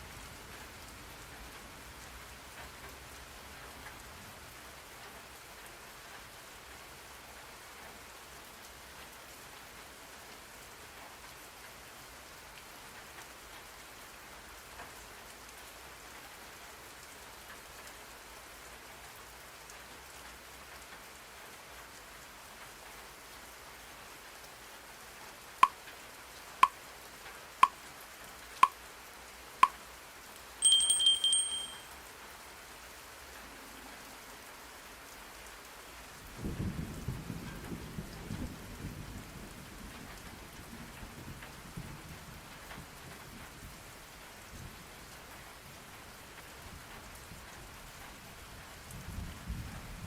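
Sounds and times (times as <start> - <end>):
rain white noise: 0.0 - 50.0
timer short beeps: 30.6 - 31.9.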